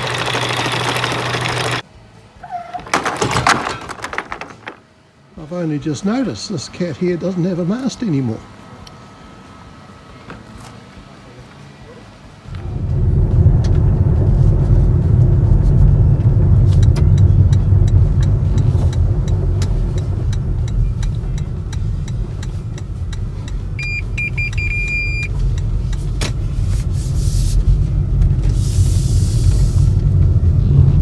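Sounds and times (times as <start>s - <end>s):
engine rumbling: 0.0s - 9.0s, 12.3s - 31.0s
short beeps: 23.8s - 25.3s.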